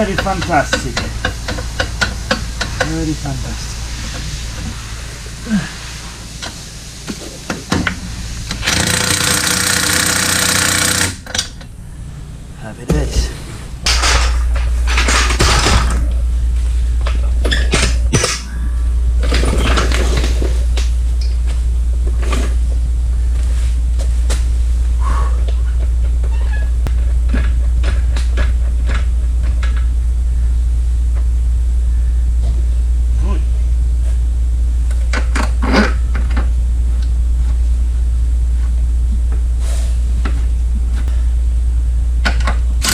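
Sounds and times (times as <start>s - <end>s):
hand tools clicking on car parts: 0.0s - 3.0s, 42.2s - 42.9s
impact wrench hammering: 0.0s - 3.0s, 7.4s - 11.6s, 42.2s - 42.9s
loud steady low hum: 0.0s - 42.9s.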